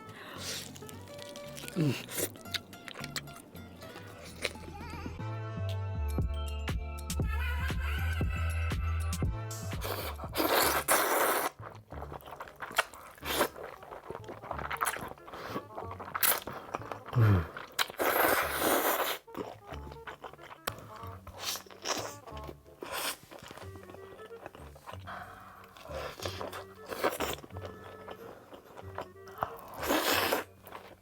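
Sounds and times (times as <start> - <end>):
crunchy chewing of food: 0.0 - 4.8, 9.8 - 31.0
background music with bass line: 0.8 - 10.9, 19.6 - 21.4.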